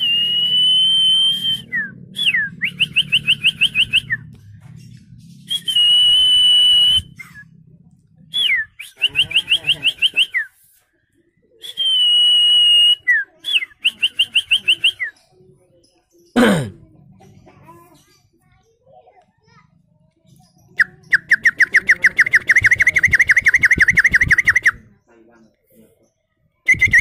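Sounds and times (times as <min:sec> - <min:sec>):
man whistling birdsong: 0:00.0 - 0:04.2, 0:05.5 - 0:07.5, 0:08.3 - 0:10.6, 0:11.6 - 0:15.1, 0:26.7 - 0:27.0.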